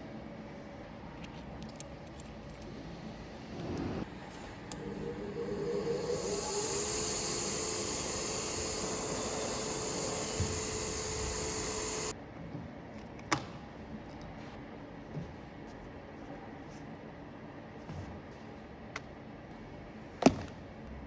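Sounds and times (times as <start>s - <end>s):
faint steady tone: 4.1s - 12.1s
air spraying hiss: 4.2s - 12.1s.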